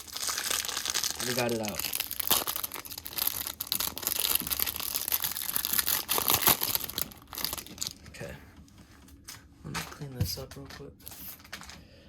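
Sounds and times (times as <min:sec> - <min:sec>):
packaging crumpled by hand: 0:00.0 - 0:08.1.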